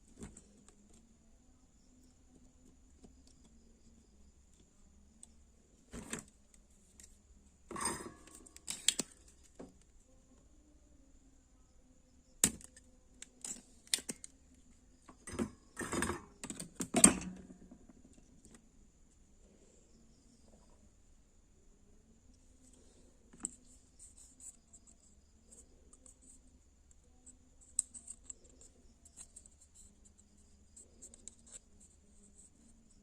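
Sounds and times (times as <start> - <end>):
light bulb parts clicking and rattling: 7.7 - 9.5.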